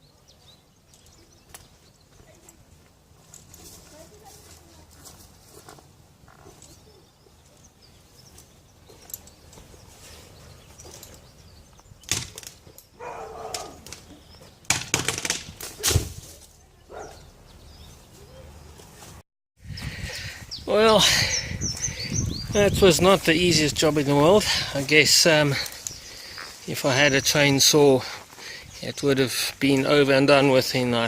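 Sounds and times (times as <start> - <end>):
branches rustling and crashing: 13.4 - 16.8.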